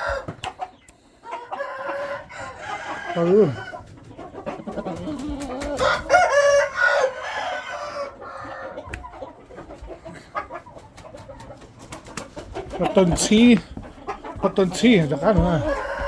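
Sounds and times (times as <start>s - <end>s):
rooster crowing: 0.0s - 0.3s, 1.5s - 3.9s, 5.6s - 8.9s, 15.2s - 16.0s
hen clucking: 0.0s - 16.0s.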